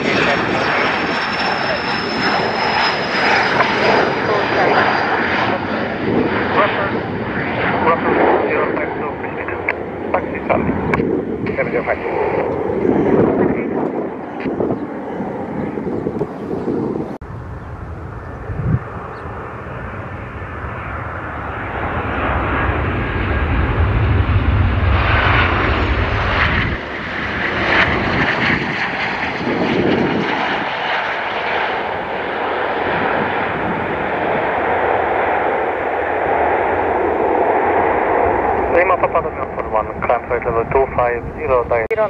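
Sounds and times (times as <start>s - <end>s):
airliner engine rumble: 0.0s - 42.0s.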